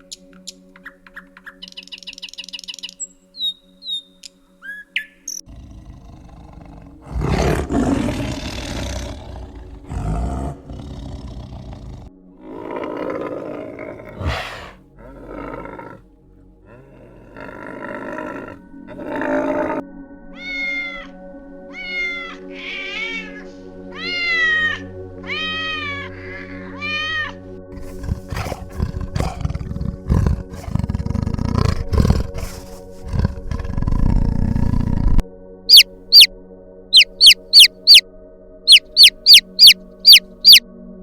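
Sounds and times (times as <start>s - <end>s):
big cat growling and roaring: 5.5s - 19.8s, 27.8s - 36.3s
high arching calls: 35.7s - 36.3s, 37.0s - 38.0s, 38.7s - 40.6s.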